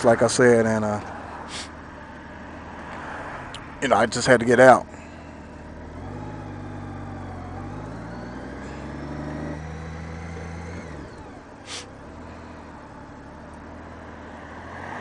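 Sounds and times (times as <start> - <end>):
motorcycle engine accelerating: 1.4 - 15.0
brief hiss: 1.5 - 1.7, 11.7 - 11.9.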